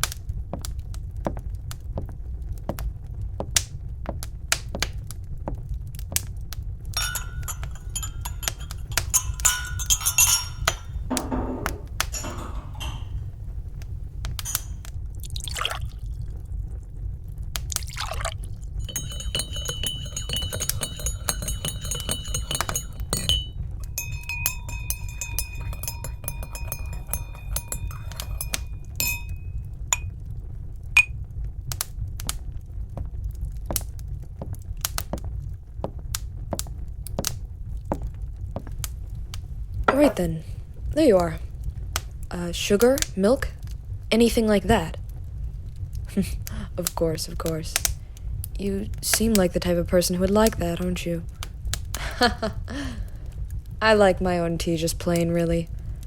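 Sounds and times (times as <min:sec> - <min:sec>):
fireplace fire crackling: 0:00.0 - 0:19.0, 0:27.2 - 0:56.0
china cups clinking: 0:07.0 - 0:13.4, 0:14.4 - 0:14.8, 0:18.0 - 0:30.1, 0:39.9 - 0:40.4
liquid pouring: 0:14.5 - 0:16.4, 0:17.7 - 0:30.0.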